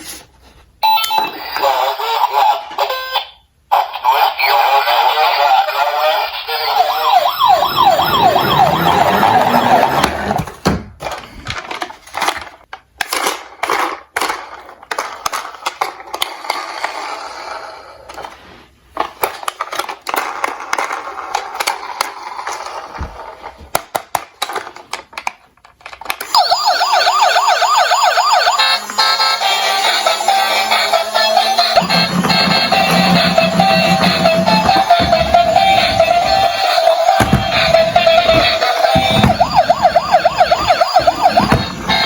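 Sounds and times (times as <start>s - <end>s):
toy sirens wailing: 4.1s - 10.4s, 26.3s - 42.0s
toy cars clattering down track: 11.0s - 18.4s, 19.0s - 26.4s.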